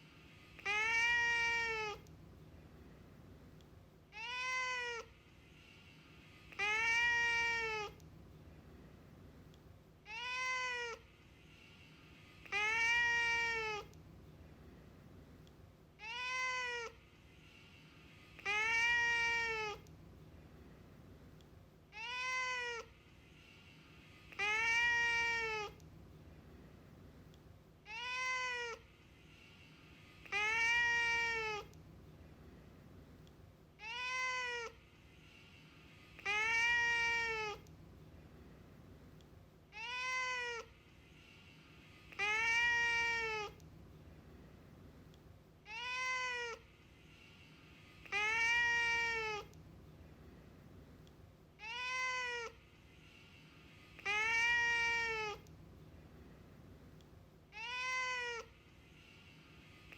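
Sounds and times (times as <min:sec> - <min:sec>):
cat meowing: 0:00.6 - 0:02.1, 0:04.1 - 0:05.1, 0:06.5 - 0:08.0, 0:10.1 - 0:11.1, 0:12.4 - 0:14.0, 0:16.0 - 0:17.0, 0:18.4 - 0:19.9, 0:21.9 - 0:22.9, 0:24.3 - 0:25.8, 0:27.9 - 0:28.9, 0:30.2 - 0:31.8, 0:33.8 - 0:34.8, 0:36.2 - 0:37.7, 0:39.7 - 0:40.7, 0:42.1 - 0:43.6, 0:45.6 - 0:46.7, 0:48.0 - 0:49.6, 0:51.6 - 0:52.6, 0:54.0 - 0:55.5, 0:57.5 - 0:58.5.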